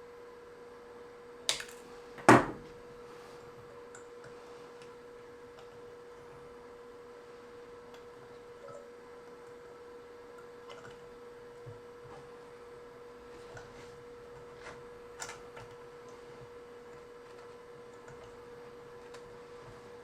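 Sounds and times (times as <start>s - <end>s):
steady electrical hum: 0.0s - 20.0s
tools clicking and tapping: 1.5s - 2.6s.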